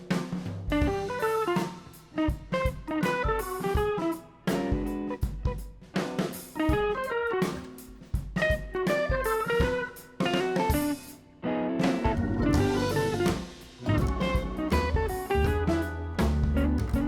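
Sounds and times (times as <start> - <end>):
drum kit beat: 0.0 - 11.2, 11.8 - 17.0
plucked guitar melody: 11.4 - 17.0.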